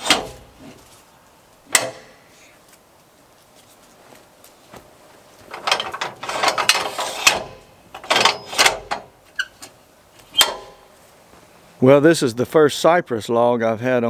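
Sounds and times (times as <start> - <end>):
sharp metal clank: 0.0 - 0.5, 1.7 - 2.2, 5.5 - 9.2, 10.4 - 10.9
metal gear rattling and ratcheting: 5.5 - 9.5.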